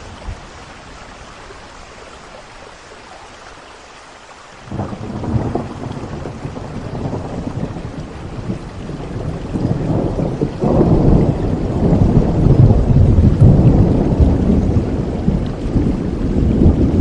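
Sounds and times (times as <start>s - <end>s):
rain falling: 0.0s - 17.0s
thunder rumbling: 4.7s - 17.0s.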